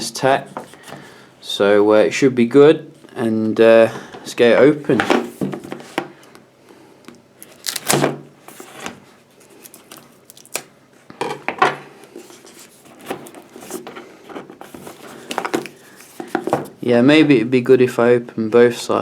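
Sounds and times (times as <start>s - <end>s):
cardboard box rustling and tearing: 7.5s - 8.9s, 12.2s - 16.7s.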